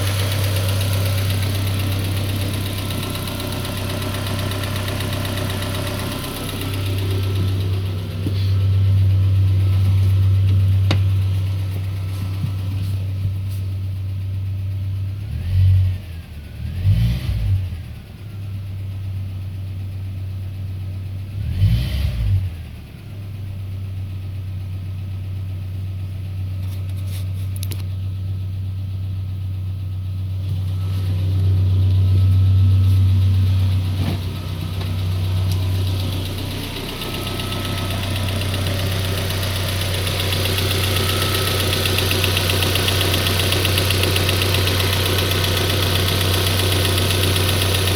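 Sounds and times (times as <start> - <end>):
engine running with knock: 0.0 - 13.7, 30.5 - 47.9
loud engine thumps: 5.6 - 13.4, 31.3 - 47.2.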